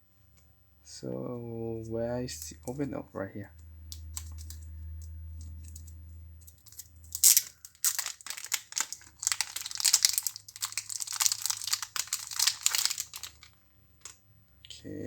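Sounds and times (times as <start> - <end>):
low hum: 0.3 - 8.4
packaging crackle: 3.9 - 14.2
wrapping crinkling and rustling: 3.9 - 14.2.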